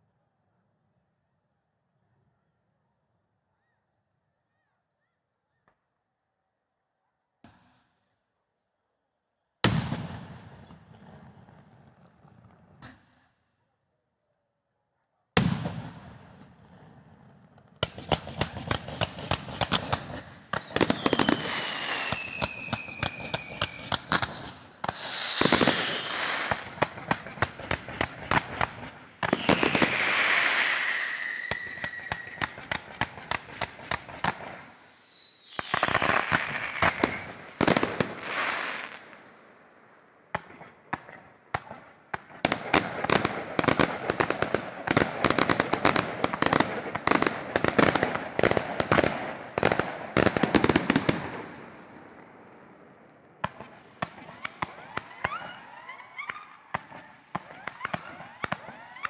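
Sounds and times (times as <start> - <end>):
fireworks cracks and crackling: 17.5 - 59.0
fireworks bang: 18.1 - 34.4.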